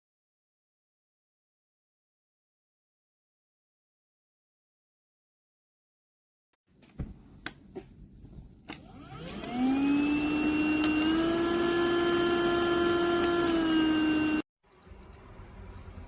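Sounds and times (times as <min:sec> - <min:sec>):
vacuum cleaner motor whine: 0:08.8 - 0:14.5.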